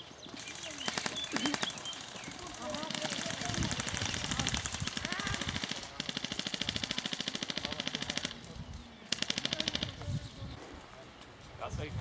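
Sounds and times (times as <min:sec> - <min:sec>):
airsoft guns firing full auto: 0:00.3 - 0:08.5, 0:09.1 - 0:10.0.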